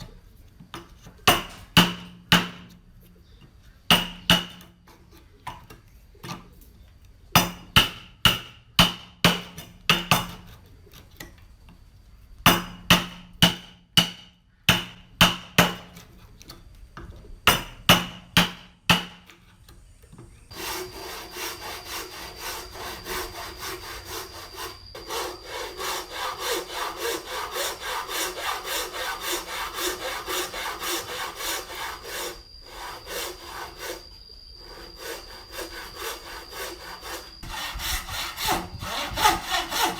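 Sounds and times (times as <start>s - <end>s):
hammer striking metal tools: 3.9s - 4.7s, 7.4s - 10.4s, 17.5s - 19.3s
handsaw cutting wood: 20.5s - 39.9s.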